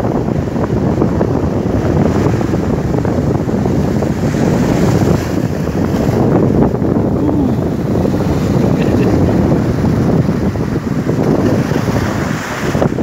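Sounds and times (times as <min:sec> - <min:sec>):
surf washing on shore: 0:00.0 - 0:13.0
wind buffeting microphone: 0:00.0 - 0:13.0.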